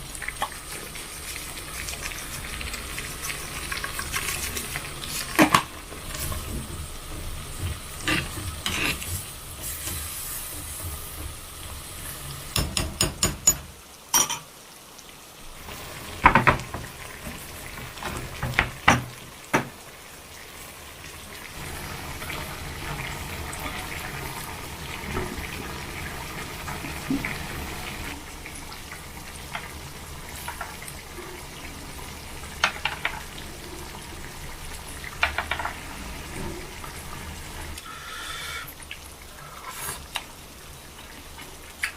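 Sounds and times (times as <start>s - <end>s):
food cooking hiss: 0.0s - 41.9s
utensils knocking on cookware: 12.5s - 14.5s.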